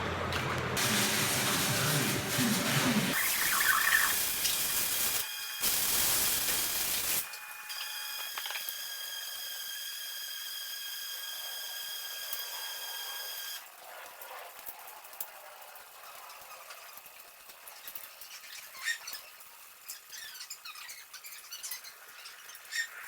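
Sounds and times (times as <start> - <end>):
loud hissing spray: 0.8 - 7.3.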